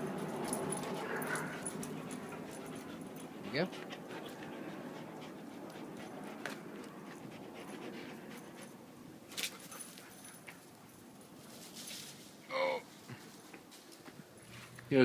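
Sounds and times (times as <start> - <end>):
dog panting: 0.0 - 11.0.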